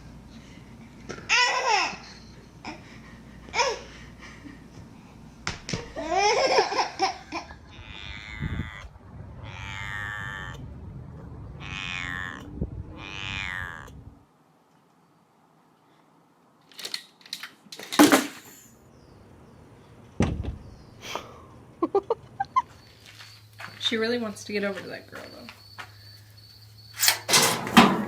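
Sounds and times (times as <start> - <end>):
baby laughing: 1.2 - 4.0, 5.9 - 7.8
long drawn-out vocal calls: 7.6 - 10.6.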